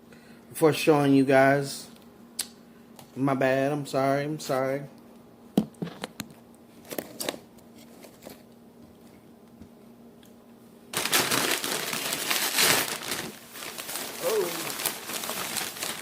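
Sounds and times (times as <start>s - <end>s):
packaging crinkling: 10.9s - 16.0s.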